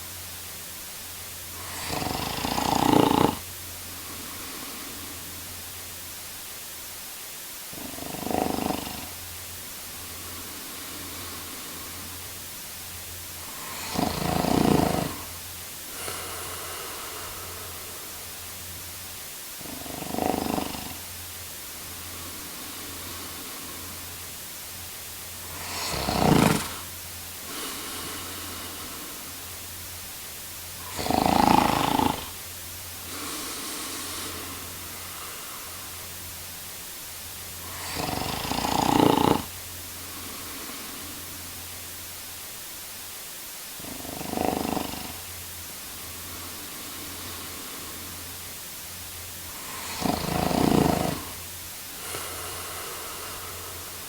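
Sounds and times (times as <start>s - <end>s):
faint steady hiss: 0.0s - 54.0s
man snoring: 1.5s - 5.6s, 7.7s - 9.3s, 10.0s - 12.4s, 13.3s - 18.5s, 19.6s - 21.1s, 21.8s - 24.2s, 25.4s - 29.7s, 30.8s - 36.2s, 37.5s - 41.5s, 43.8s - 45.3s, 45.9s - 48.4s, 49.4s - 54.0s.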